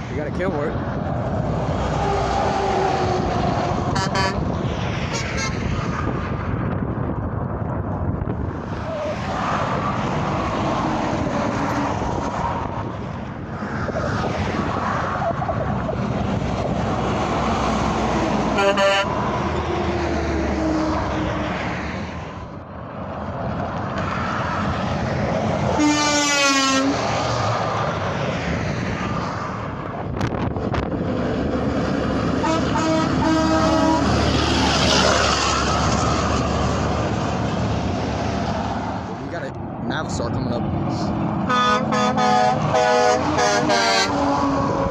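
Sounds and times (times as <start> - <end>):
heavy trucks passing: 0.0 - 44.9
truck air horn: 3.9 - 4.5, 5.1 - 5.6, 18.5 - 19.2, 25.7 - 27.0, 32.4 - 34.2, 41.5 - 44.9.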